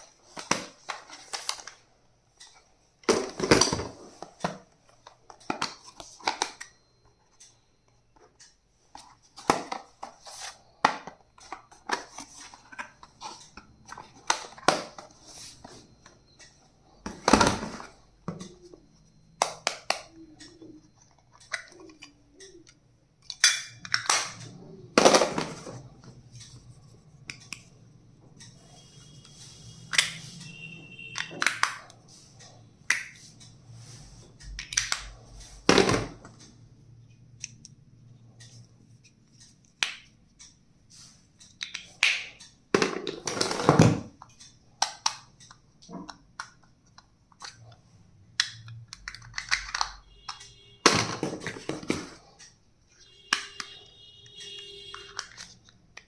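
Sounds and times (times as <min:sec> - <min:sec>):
plastic stationery clicking and tapping: 0:48.4 - 0:50.4.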